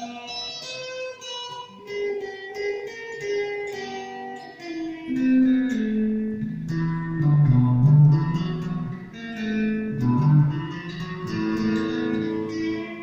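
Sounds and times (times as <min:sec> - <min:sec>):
electric guitar picked notes: 0:00.0 - 0:13.0.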